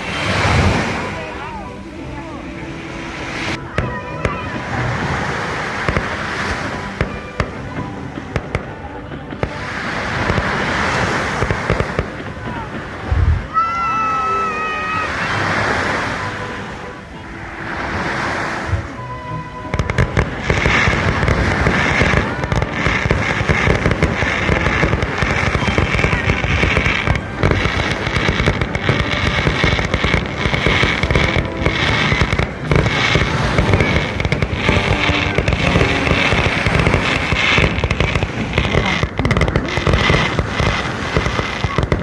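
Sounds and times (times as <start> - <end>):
fireworks crackling and popping: 0.0 - 2.4, 3.0 - 15.9, 18.7 - 42.0
rushing noise: 0.0 - 42.0.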